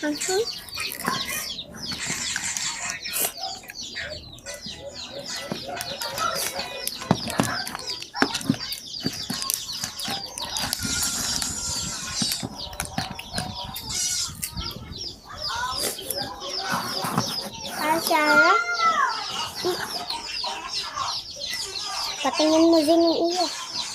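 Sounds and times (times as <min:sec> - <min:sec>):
chickens clucking: 0:00.0 - 0:23.9.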